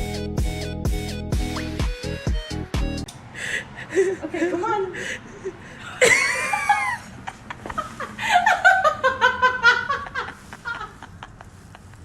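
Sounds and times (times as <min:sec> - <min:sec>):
person laughing: 0:03.7 - 0:12.0.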